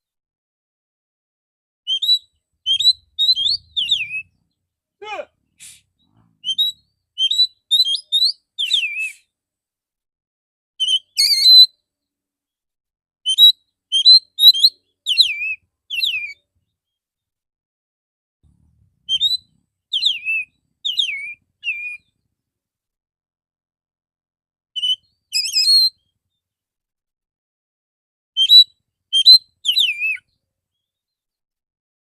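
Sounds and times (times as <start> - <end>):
magpie-robin singing: 1.9 - 4.5, 5.6 - 9.2, 10.8 - 11.8, 13.3 - 17.0, 19.0 - 22.2, 24.8 - 26.1, 28.4 - 30.9.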